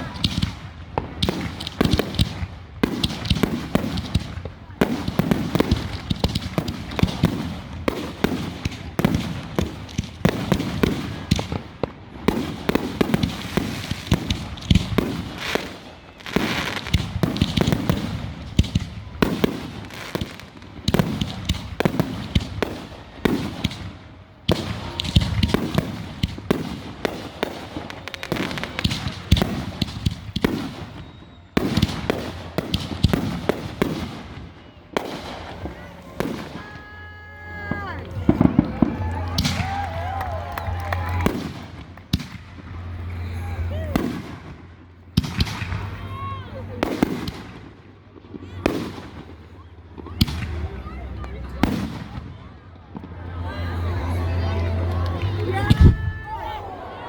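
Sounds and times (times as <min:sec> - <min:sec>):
deep firework booms: 0:00.0 - 0:36.7, 0:37.7 - 0:43.1, 0:43.9 - 0:46.0
fireworks bangs and crackles: 0:00.0 - 0:57.0.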